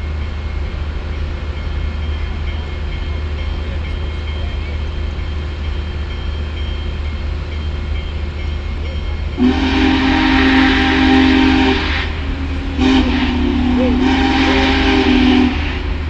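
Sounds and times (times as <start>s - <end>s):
steam hissing: 0.0s - 16.0s
steam locomotive whistle: 9.3s - 16.0s
steady low rumble: 10.4s - 16.0s.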